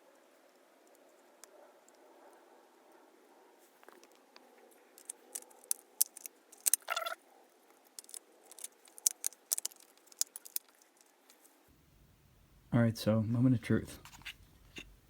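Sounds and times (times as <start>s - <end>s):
plastic parts clicking: 5.0s - 6.9s, 8.0s - 11.1s.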